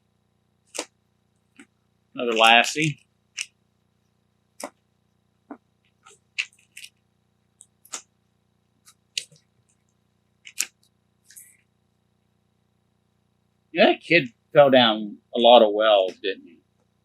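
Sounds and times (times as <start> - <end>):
comic books rustling: 2.2 - 3.5.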